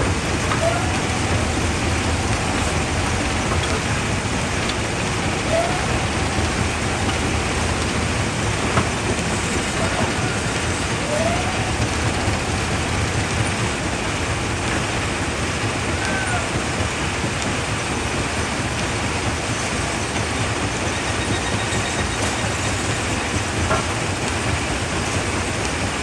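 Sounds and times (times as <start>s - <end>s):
jaw crusher running: 0.0s - 16.8s.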